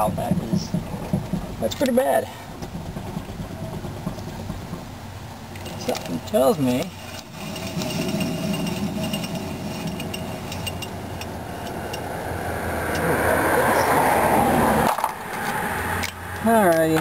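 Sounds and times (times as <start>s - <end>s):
wheel bearing grinding: 0.0s - 17.0s.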